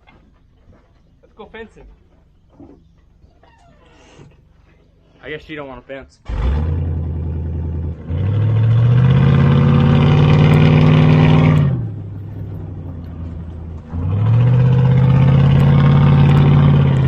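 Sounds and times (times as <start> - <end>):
pickup truck engine accelerating: 6.2 - 17.0.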